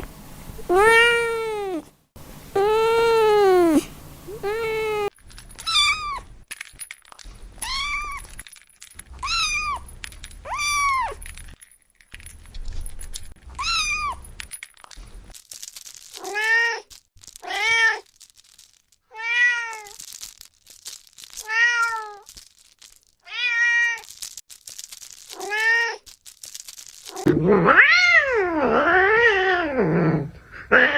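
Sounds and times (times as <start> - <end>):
kitten meowing: 0.7 - 1.8, 2.6 - 5.1, 9.2 - 9.8, 13.6 - 14.2.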